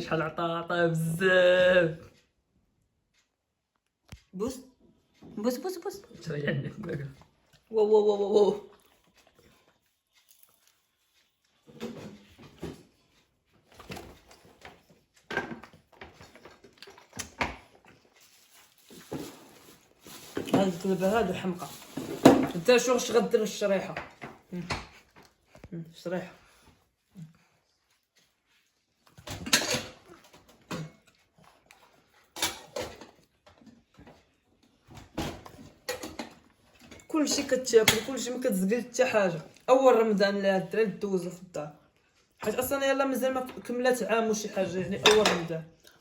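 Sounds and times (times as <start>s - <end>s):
dogs eating: 5.5s - 20.1s
dish clattering: 44.8s - 45.5s.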